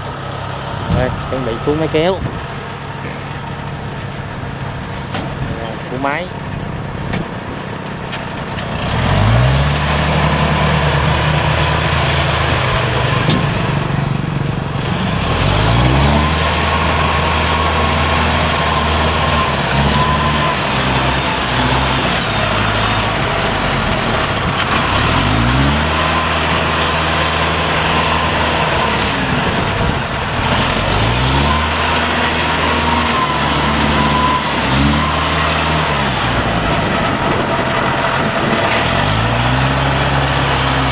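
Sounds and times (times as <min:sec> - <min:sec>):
steady high whine: 0:00.0 - 0:07.6
diesel engine revving: 0:00.0 - 0:40.9.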